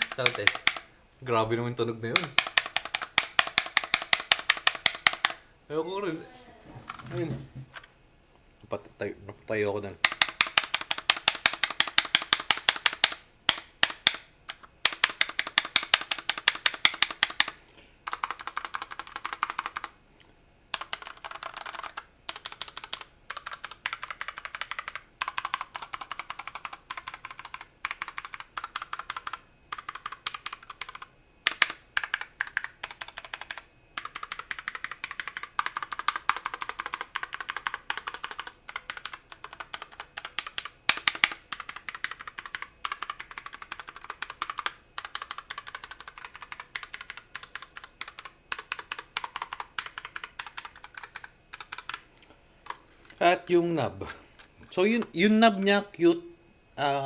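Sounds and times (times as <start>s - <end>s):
mechanical keyboard typing: 0.0s - 0.9s, 2.0s - 5.4s, 10.0s - 20.0s, 20.7s - 53.2s.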